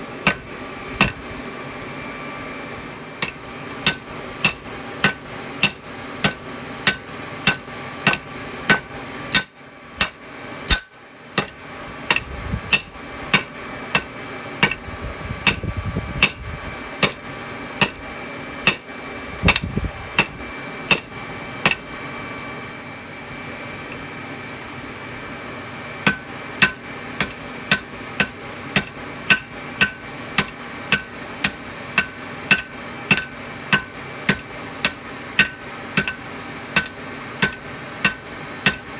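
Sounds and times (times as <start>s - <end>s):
hammer striking steel on anvil: 0.2s - 1.3s, 3.2s - 14.8s, 16.2s - 16.4s, 17.0s - 17.2s, 17.8s - 18.0s, 18.6s - 18.9s, 20.2s - 21.8s, 26.0s - 38.9s.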